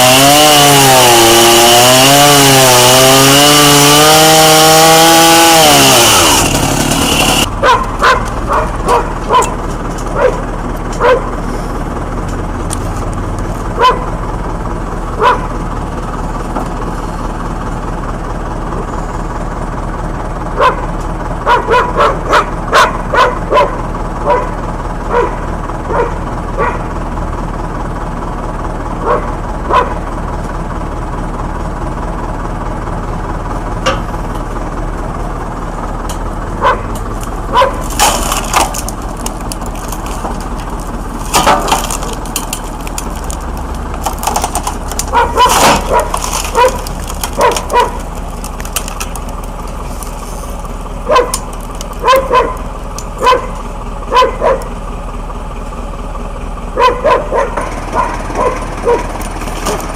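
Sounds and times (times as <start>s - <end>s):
dog barking: 7.6s - 10.4s, 11.0s - 11.3s, 13.8s - 14.1s, 15.2s - 15.5s, 20.6s - 26.8s, 29.0s - 30.0s, 36.6s - 37.8s, 45.1s - 48.0s, 51.1s - 51.4s, 52.0s - 54.8s, 56.8s - 59.1s
sharp cracks: 37.1s - 53.6s.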